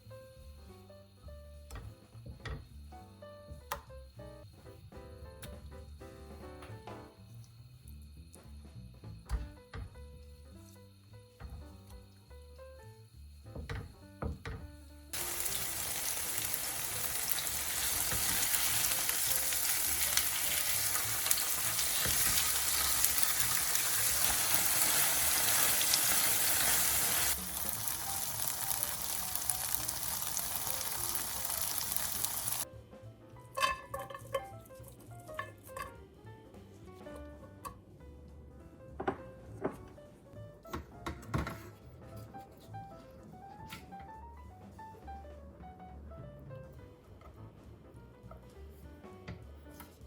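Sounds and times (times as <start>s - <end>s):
tofu sizzling in oil: 15.1s - 32.7s.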